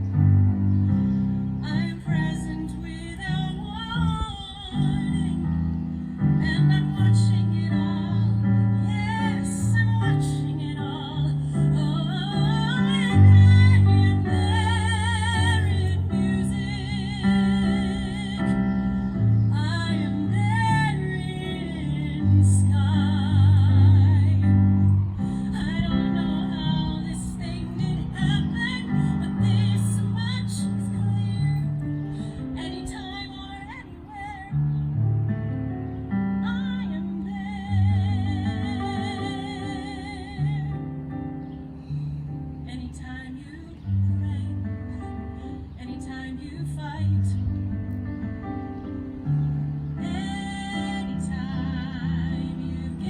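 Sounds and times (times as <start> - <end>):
piano playing: 0.0 - 53.0
woman singing with vibrato: 1.6 - 5.6, 6.2 - 34.7, 36.4 - 40.9, 50.0 - 53.0.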